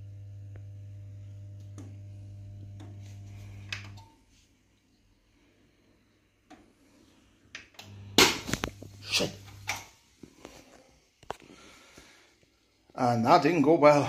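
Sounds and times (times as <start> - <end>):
low mains hum: 0.0 - 10.0
crackling pops: 7.8 - 9.9.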